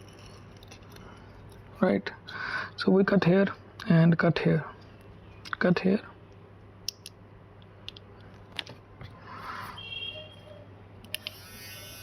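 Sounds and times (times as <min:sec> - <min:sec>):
small tool clicking: 0:11.0 - 0:12.0.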